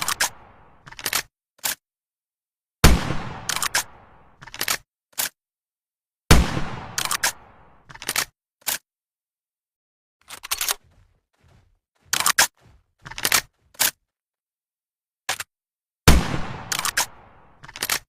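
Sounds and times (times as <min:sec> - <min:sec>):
shotgun blast: 0:02.8 - 0:04.4, 0:06.3 - 0:07.9, 0:16.1 - 0:17.6
sharp clicks and clacks: 0:06.9 - 0:08.8, 0:10.2 - 0:14.1.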